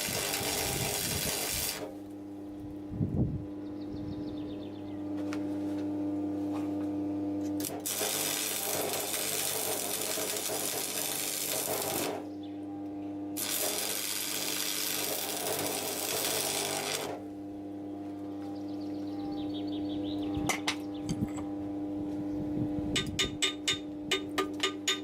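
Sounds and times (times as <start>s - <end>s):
welding arc crackling: 0.0s - 2.0s, 7.6s - 12.3s, 13.4s - 17.2s
constant low hum: 0.0s - 25.0s.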